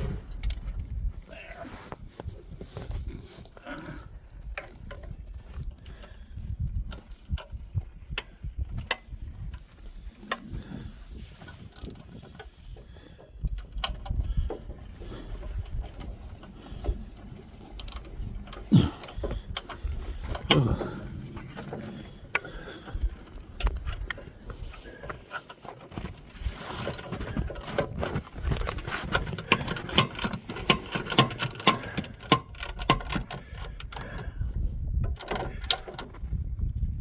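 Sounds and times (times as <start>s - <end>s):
ratchet wrench clicking: 11.6s - 12.0s, 17.7s - 19.2s, 29.4s - 34.2s
metal knocks of tools: 29.4s - 34.2s.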